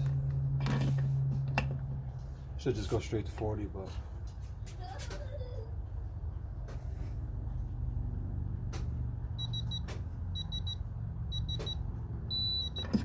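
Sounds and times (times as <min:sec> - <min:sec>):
torque wrench beeping: 0:09.4 - 0:13.0.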